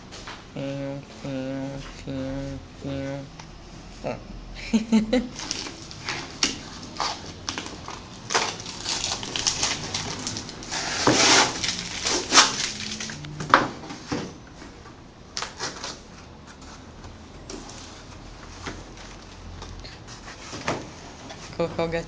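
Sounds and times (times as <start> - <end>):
packaging crinkling and tearing: 5.4 - 13.3.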